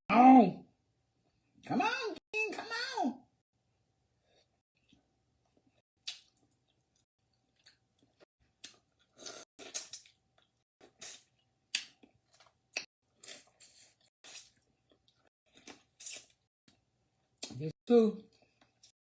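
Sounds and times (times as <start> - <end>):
person chewing: 4.8 - 17.6.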